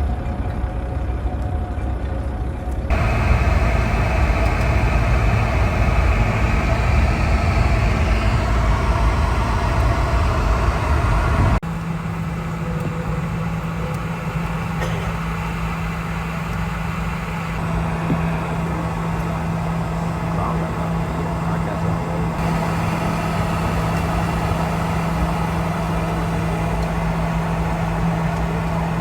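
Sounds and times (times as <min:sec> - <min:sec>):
low engine hum: 0:00.3 - 0:29.0
loud engine and road rumble: 0:02.9 - 0:29.0.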